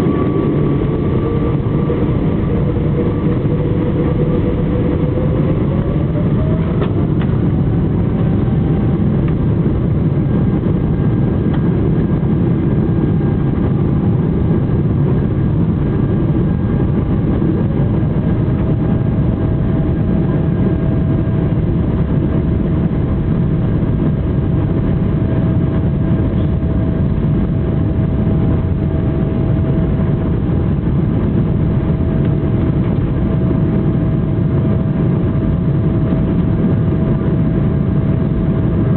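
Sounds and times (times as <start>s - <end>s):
thin rising engine whine: 0.0s - 9.1s
jet engines rumbling: 0.0s - 38.9s.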